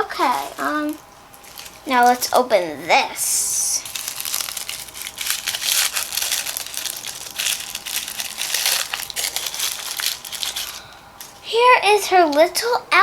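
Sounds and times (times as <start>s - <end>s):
plastic bag crinkling: 0.0s - 11.4s.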